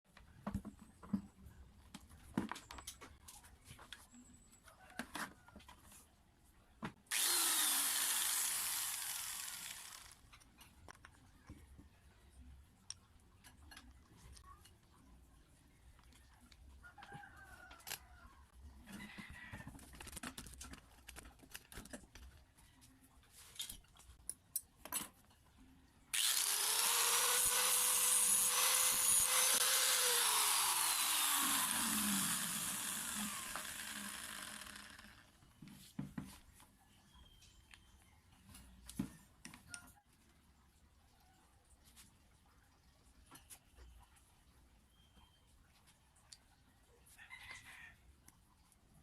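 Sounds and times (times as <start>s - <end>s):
angle grinder whining: 7.1s - 10.2s, 26.2s - 35.4s.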